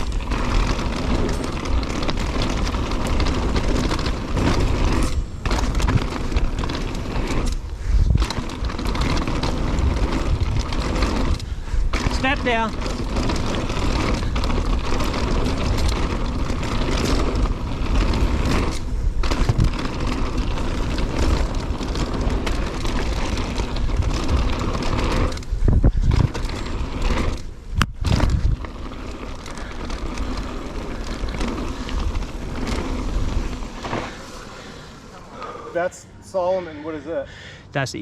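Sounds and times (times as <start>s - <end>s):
wind rush on microphone: 0.0s - 34.5s
tyres rolling over dirt: 0.0s - 36.0s
bike rattling over bumps: 0.0s - 36.4s.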